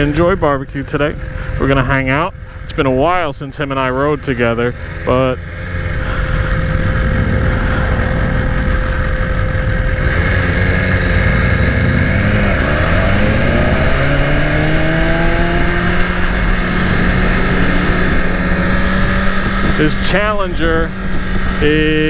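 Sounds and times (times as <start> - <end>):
motorcycle engine running: 0.0 - 22.0
wind noise: 0.0 - 22.0.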